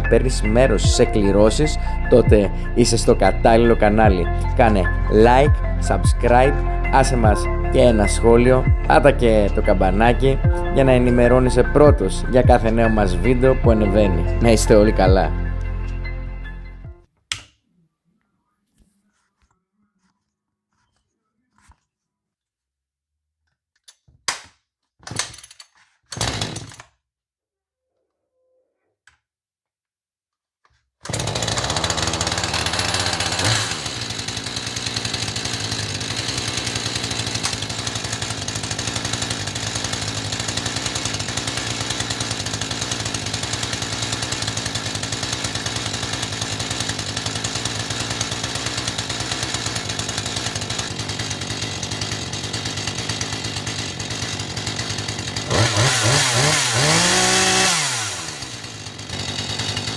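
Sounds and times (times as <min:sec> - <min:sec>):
chainsaw engine running: 0:00.0 - 0:16.6, 0:26.2 - 0:26.8, 0:31.1 - 0:59.9.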